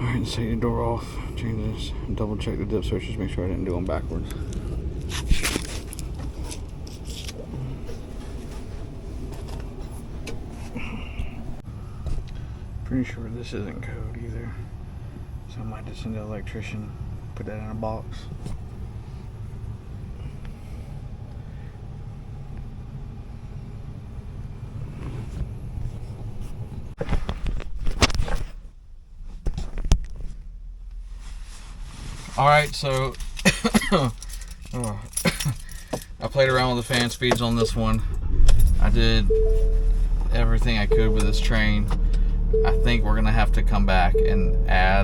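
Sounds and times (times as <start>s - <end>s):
air handler blower rumbling: 0.0s - 22.4s, 37.4s - 45.0s.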